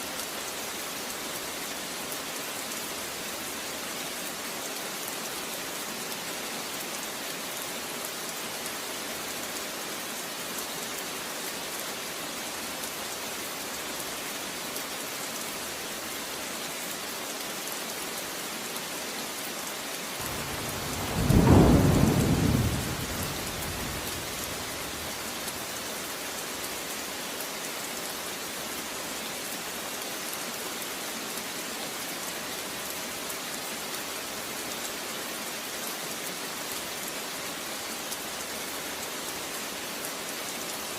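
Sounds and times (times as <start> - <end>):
steady rain: 0.0 - 40.9
thunder rumbling: 20.2 - 25.5.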